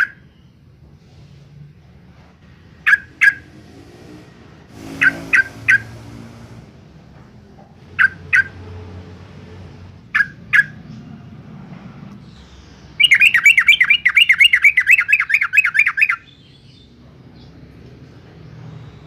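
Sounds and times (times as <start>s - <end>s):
bird sharp call notes: 13.0s - 16.3s.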